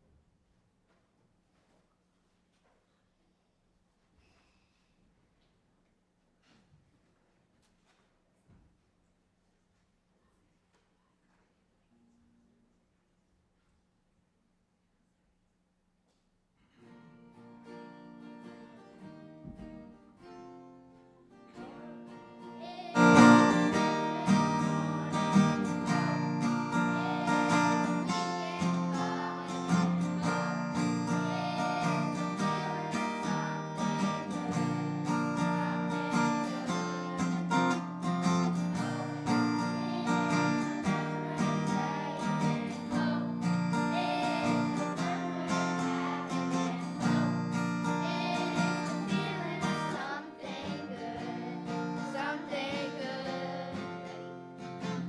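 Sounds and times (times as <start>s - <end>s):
live guitar music: 17.0s - 55.0s.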